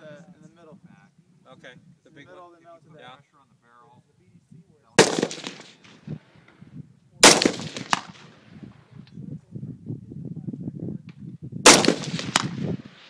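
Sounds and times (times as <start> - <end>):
rifle shot with echo: 5.0 - 6.6, 7.2 - 8.8, 11.6 - 13.0.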